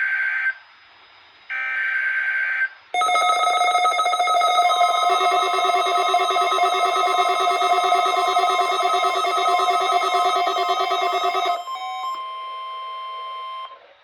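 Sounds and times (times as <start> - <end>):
buzzy alert attention tone: 3.0 - 11.6
warbling data bursts: 3.0 - 11.6.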